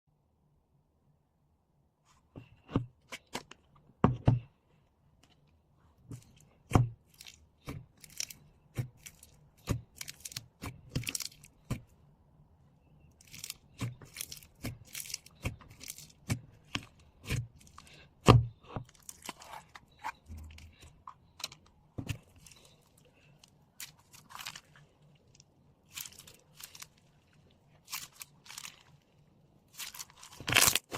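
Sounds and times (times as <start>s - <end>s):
foam slime crackling: 7.0s - 11.8s, 22.1s - 30.9s.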